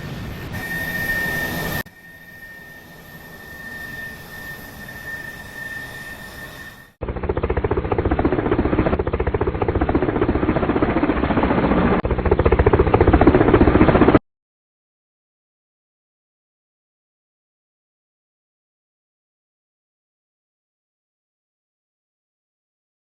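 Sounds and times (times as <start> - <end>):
jet engine whine: 0.0 - 14.2.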